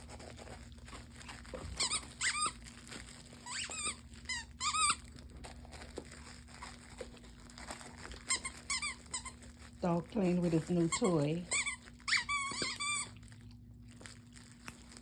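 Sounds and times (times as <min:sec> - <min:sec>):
dog toy squeaking: 0:01.6 - 0:02.6, 0:03.4 - 0:05.1, 0:08.2 - 0:09.5, 0:10.8 - 0:13.1.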